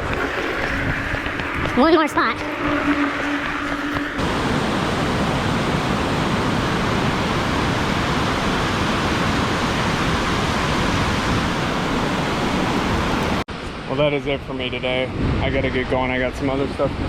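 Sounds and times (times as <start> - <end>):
water pouring over a dam: 0.0 - 4.1.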